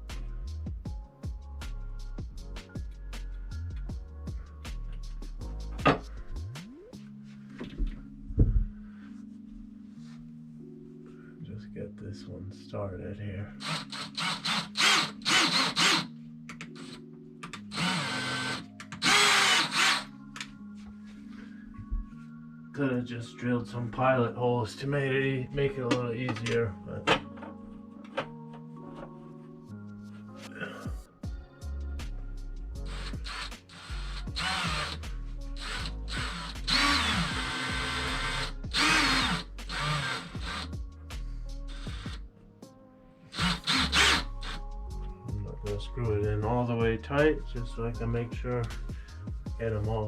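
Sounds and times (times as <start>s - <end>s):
power drill driving screw into wood: 13.6s - 16.1s, 17.6s - 20.1s, 32.9s - 35.0s, 35.6s - 40.7s, 43.3s - 44.6s.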